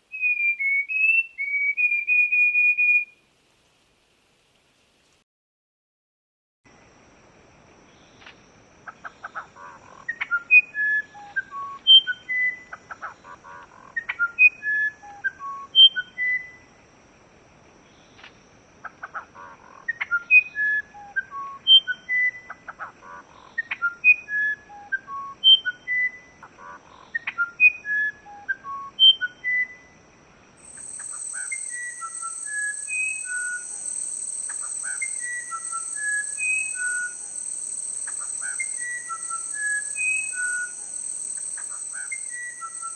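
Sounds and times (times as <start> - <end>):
songbird singing: 0.0 - 3.2, 8.9 - 16.7, 18.8 - 29.9, 30.6 - 42.9.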